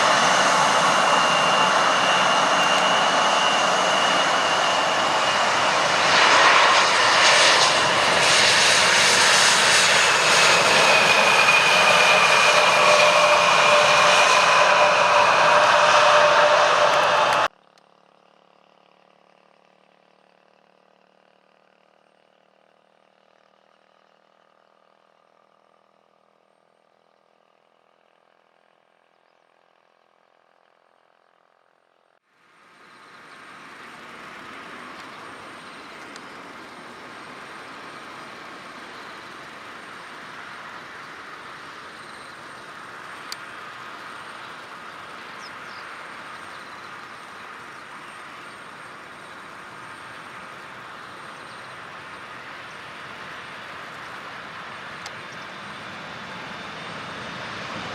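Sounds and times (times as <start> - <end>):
jet engines roaring: 0.0 - 17.5, 32.6 - 57.9
faint engine hum: 0.0 - 57.9.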